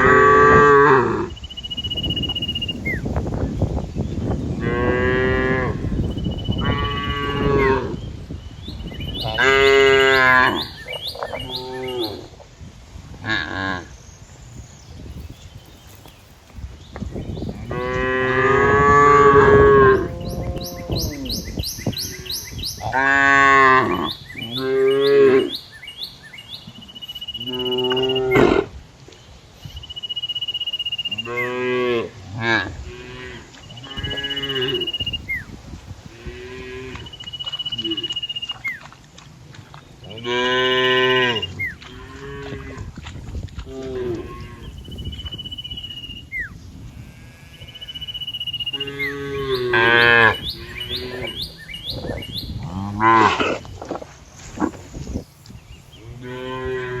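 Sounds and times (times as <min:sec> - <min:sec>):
cattle mooing: 0:06.6 - 0:08.0, 0:17.7 - 0:21.4, 0:31.2 - 0:35.0.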